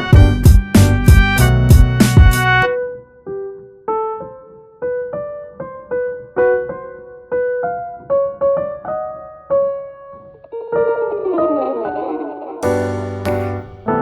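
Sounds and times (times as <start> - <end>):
gentle piano melody: 2.6 - 14.0.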